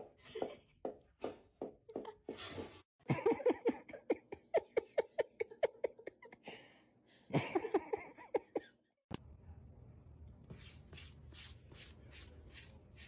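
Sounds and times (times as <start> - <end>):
dry scratching strokes: 10.5 - 13.0.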